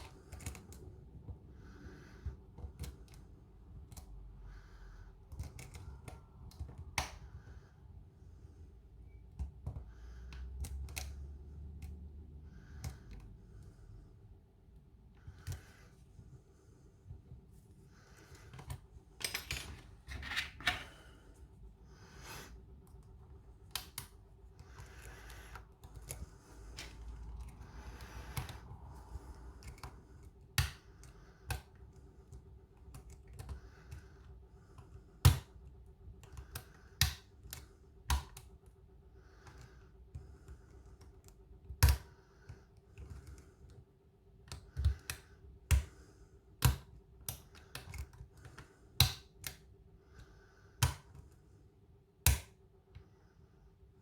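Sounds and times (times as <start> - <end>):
lock pick scraping in keyway: 19.2 - 20.9.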